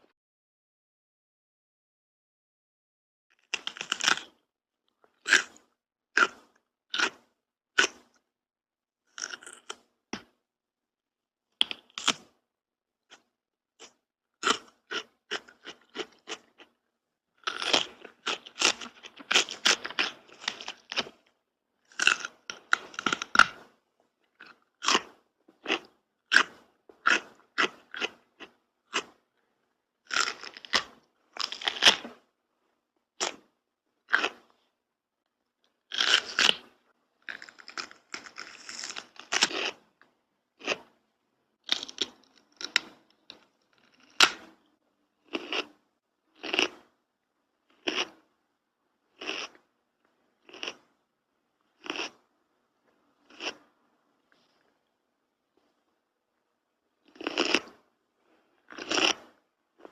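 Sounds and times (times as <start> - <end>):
crunchy food chewing: 3.3 - 8.2, 9.1 - 10.4, 11.6 - 12.4, 13.1 - 16.8, 17.4 - 29.4, 30.0 - 32.3, 33.2 - 34.6, 35.6 - 41.0, 41.6 - 44.6, 45.2 - 47.0, 47.6 - 48.3, 49.1 - 49.7, 50.4 - 50.9, 51.6 - 52.3, 52.9 - 53.7, 57.0 - 59.9.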